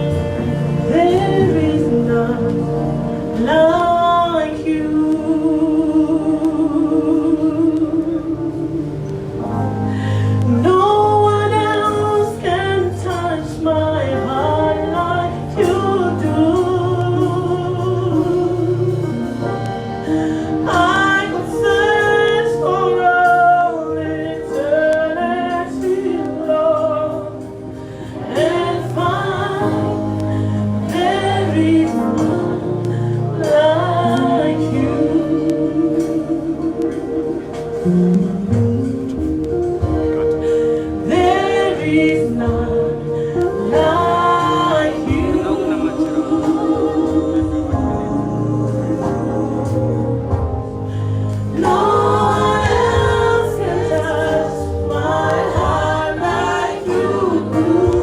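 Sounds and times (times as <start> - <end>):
gospel singing: 0.0 - 58.0
sustained instrumental chords and bass: 0.0 - 58.0.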